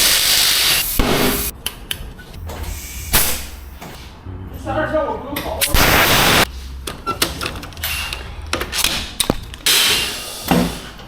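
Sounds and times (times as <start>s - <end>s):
air hiss bursts: 5.6s - 6.5s, 9.7s - 10.9s.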